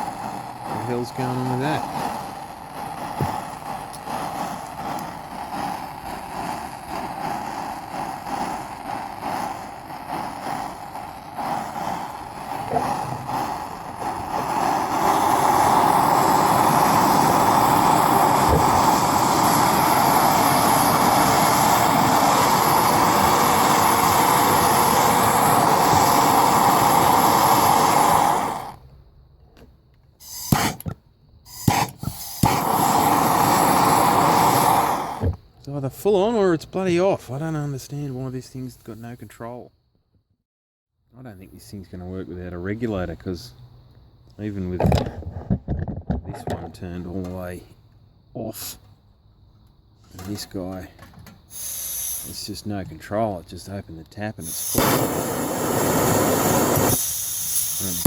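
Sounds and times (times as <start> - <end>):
gas burner flame rushing: 0.0 - 28.9, 30.2 - 38.0, 50.1 - 53.0, 54.4 - 58.0
burner puffs: 0.0 - 29.0, 30.2 - 39.6, 49.8 - 58.0.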